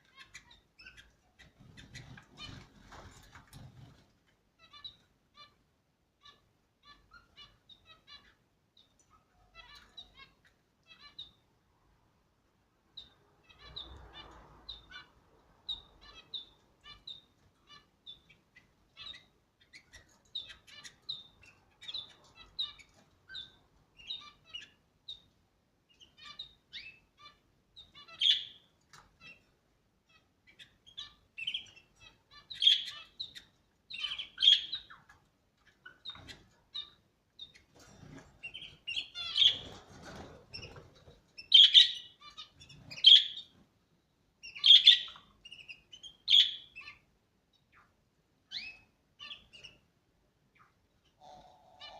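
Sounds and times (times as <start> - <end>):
birds chirping: 0.0 - 11.5, 12.9 - 51.9.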